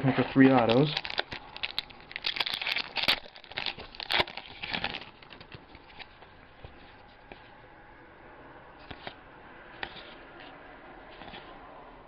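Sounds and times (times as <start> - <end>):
foil wrapper crinkling and tearing: 0.4 - 6.3.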